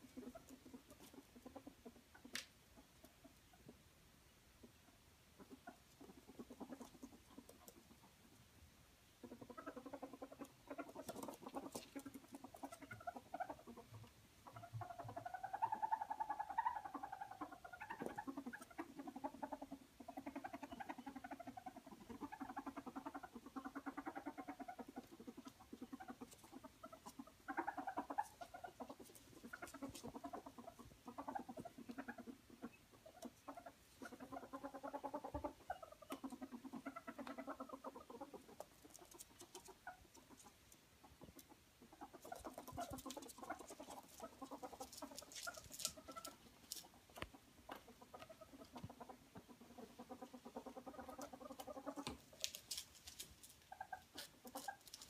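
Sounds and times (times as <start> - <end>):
ferrets clucking chatter: 9.2 - 55.0
light clicks and scratches: 38.5 - 49.0, 51.0 - 55.0.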